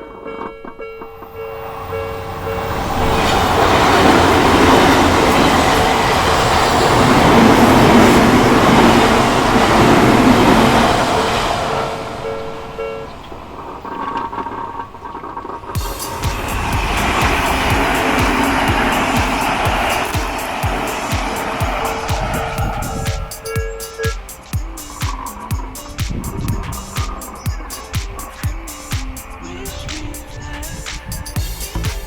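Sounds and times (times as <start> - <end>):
level crossing warning bell: 0.0 - 9.6
train wheels rumbling on rails: 0.4 - 32.0.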